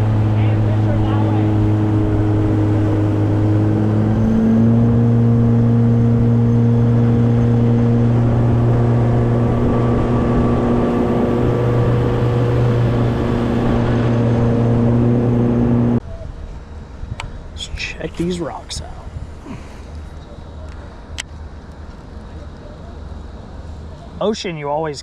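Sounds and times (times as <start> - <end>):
outboard motor running: 0.0 - 16.0.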